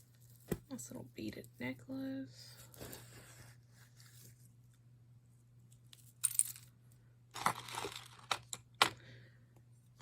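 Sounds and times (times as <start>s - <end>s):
low steady hum: 0.0s - 10.0s
metal jewelry clinking: 5.9s - 6.7s.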